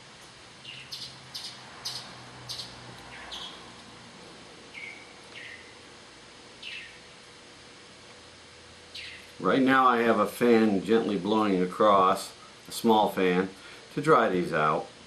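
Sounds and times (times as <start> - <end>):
small bird chirping: 0.6 - 3.8, 4.7 - 5.8, 6.5 - 7.1, 8.8 - 9.4.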